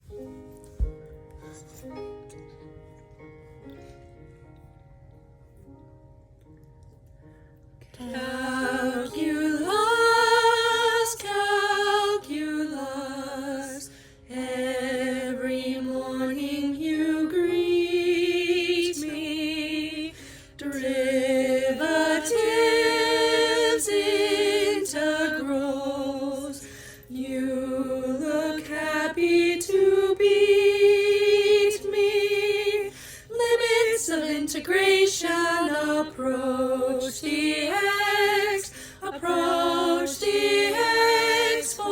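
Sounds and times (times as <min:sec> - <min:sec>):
women singing a cappella: 0:08.0 - 0:41.9.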